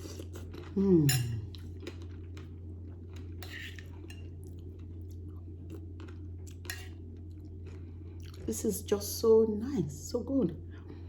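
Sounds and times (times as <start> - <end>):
person chewing: 0.0 - 8.4
steady low hum: 0.0 - 11.0.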